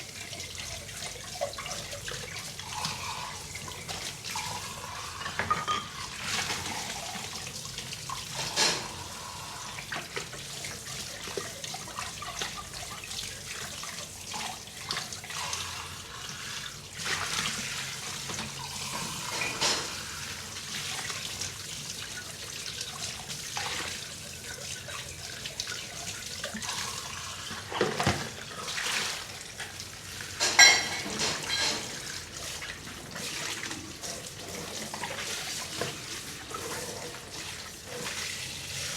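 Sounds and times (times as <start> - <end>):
dishes clinking: 5.2 - 6.0, 19.3 - 20.0, 30.4 - 32.0
water splashing and trickling: 20.4 - 38.9.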